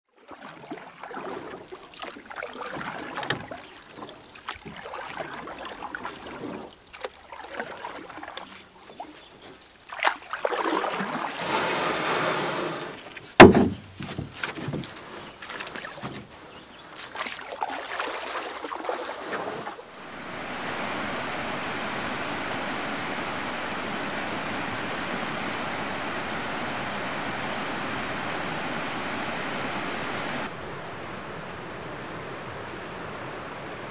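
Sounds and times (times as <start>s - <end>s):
water splashing around kayak: 0.1s - 30.6s
loud thump: 13.4s - 14.3s
sharp knocks: 13.4s - 14.9s
steady rush of noise: 20.0s - 33.9s.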